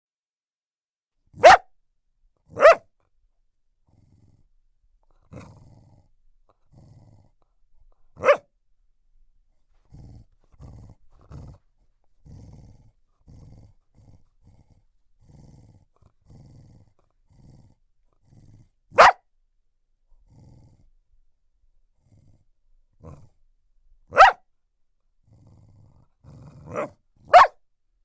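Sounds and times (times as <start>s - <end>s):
dog barking: 1.4s - 1.7s, 2.5s - 2.9s, 8.2s - 8.4s, 18.9s - 19.2s, 24.1s - 24.4s, 26.7s - 27.6s
dog growling: 3.9s - 8.4s, 9.8s - 19.2s, 20.2s - 21.0s, 22.0s - 23.4s, 25.2s - 27.5s.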